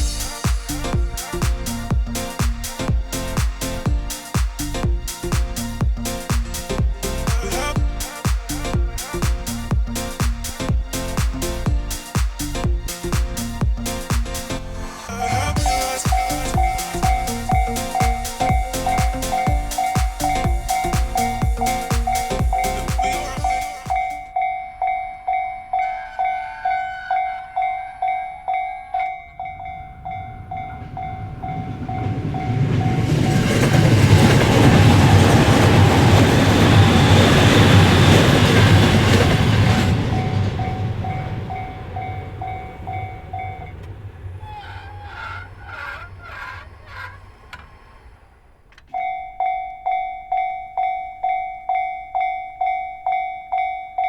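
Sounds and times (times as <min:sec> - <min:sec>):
train passing: 0:00.0 - 0:54.0
level crossing bell ringing: 0:15.6 - 0:32.6, 0:48.9 - 0:54.0.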